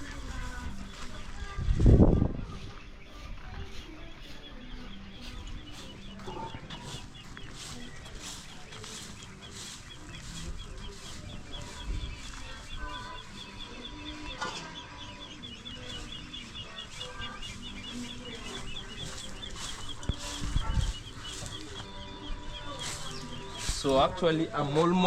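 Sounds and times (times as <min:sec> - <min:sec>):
chickens clucking: 0:00.0 - 0:25.0
high bird chirps: 0:04.2 - 0:23.9
broom swishes: 0:05.2 - 0:13.2, 0:16.0 - 0:21.9, 0:22.7 - 0:24.2.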